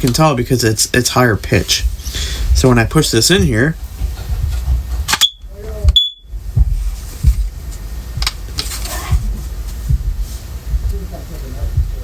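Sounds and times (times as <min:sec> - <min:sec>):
handling rumble and knocks: 0:00.0 - 0:12.0
smoke alarm high beeps: 0:05.2 - 0:06.3.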